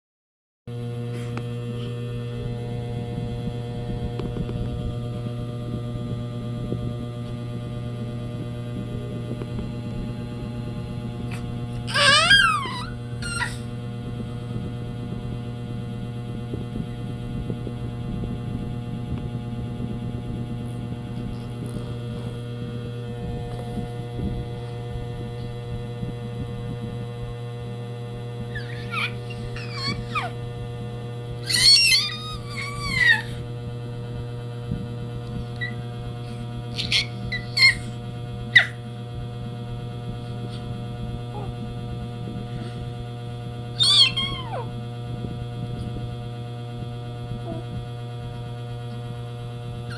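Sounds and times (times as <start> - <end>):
steady low hum: 0.7 - 49.9
cat squeaky calls: 11.9 - 13.6, 28.6 - 30.4, 31.4 - 33.4, 36.8 - 38.0, 43.8 - 44.7.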